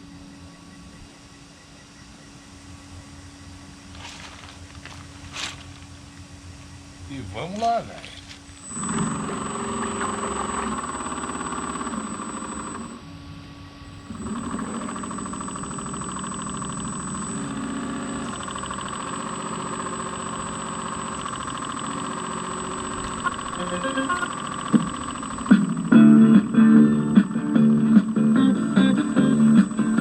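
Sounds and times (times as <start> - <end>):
model boat motor running: 8.5 - 13.1, 13.9 - 30.0.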